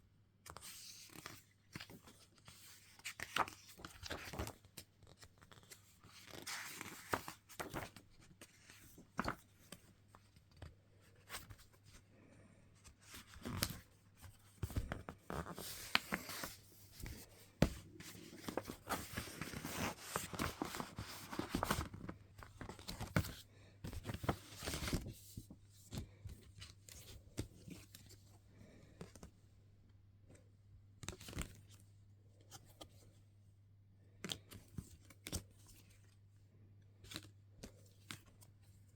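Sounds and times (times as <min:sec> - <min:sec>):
paper and card rustling: 0:00.5 - 0:12.0, 0:12.8 - 0:28.2.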